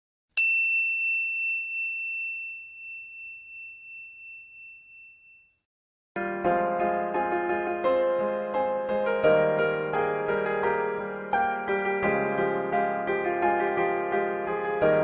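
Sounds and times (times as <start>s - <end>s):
high bell-like ding: 0.4s - 5.6s
keyboard music with piano chords: 6.2s - 15.0s.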